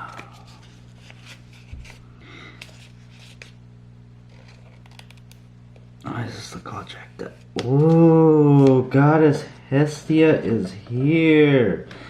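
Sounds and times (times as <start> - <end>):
low electrical hum: 0.0 - 12.0
trading cards rustling and clicking: 4.2 - 5.5, 7.2 - 8.9.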